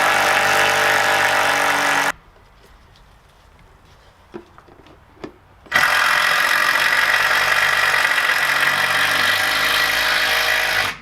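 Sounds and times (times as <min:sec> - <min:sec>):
power screwdriver driving screw: 0:05.7 - 0:11.0.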